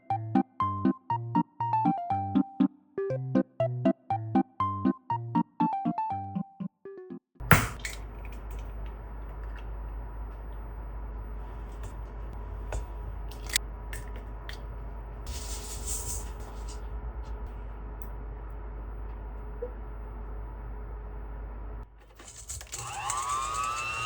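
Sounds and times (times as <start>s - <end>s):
electrical hum: 7.4s - 24.0s.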